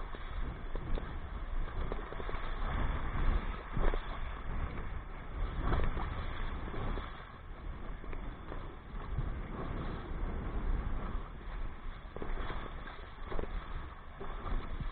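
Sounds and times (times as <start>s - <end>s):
wind buffeting microphone: 0.0s - 14.9s.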